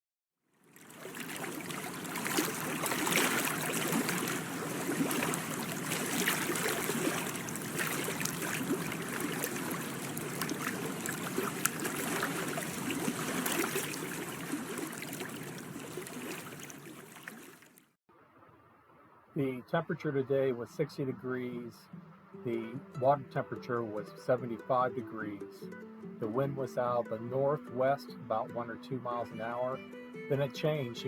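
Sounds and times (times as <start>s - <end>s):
water splashing and trickling: 0.6s - 18.0s.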